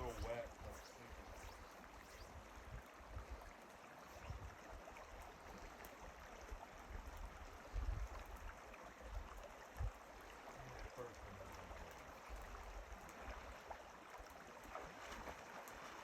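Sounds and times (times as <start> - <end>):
wind buffeting microphone: 0.0 - 1.1, 7.0 - 8.5
flowing creek: 0.0 - 16.0.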